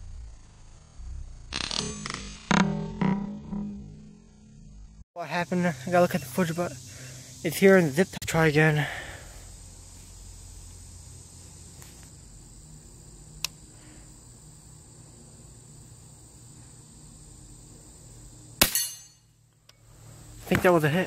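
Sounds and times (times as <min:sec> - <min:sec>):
insects droning: 0:00.0 - 0:21.0
sharp click: 0:13.4 - 0:13.6.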